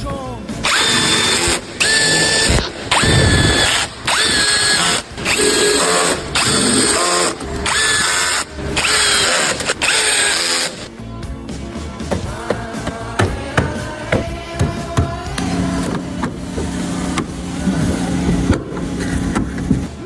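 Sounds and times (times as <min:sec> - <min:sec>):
power drill whining: 0:00.6 - 0:10.9.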